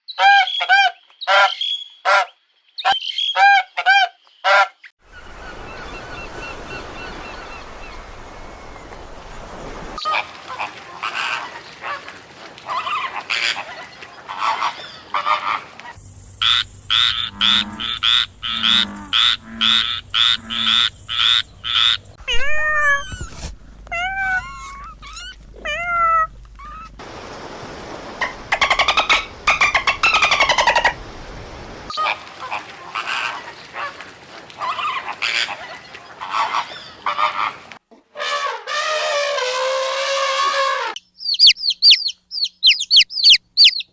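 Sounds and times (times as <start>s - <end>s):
animals calling: 0.1s - 27.0s, 31.9s - 43.9s.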